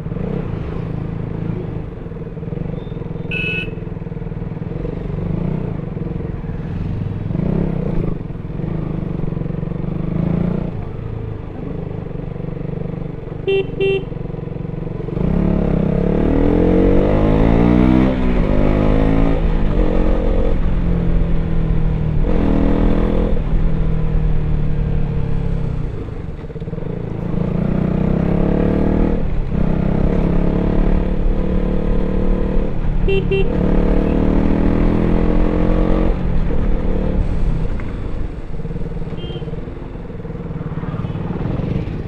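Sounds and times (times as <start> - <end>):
motorcycle engine: 0.0 - 42.0
vehicle horn toots: 2.8 - 3.8, 13.4 - 14.1, 33.0 - 34.3, 39.1 - 39.6.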